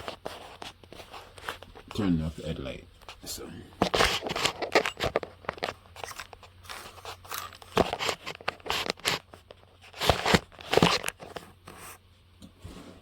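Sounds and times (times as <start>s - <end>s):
plastic clicking and crunching: 3.8s - 11.4s.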